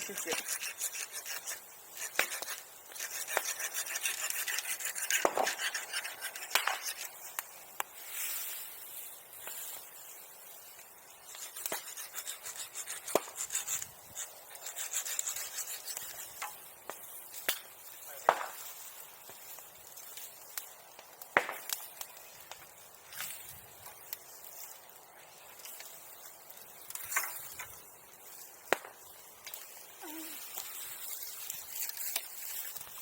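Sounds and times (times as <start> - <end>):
hand saw cutting wood: 0.0 - 7.1, 11.3 - 16.6.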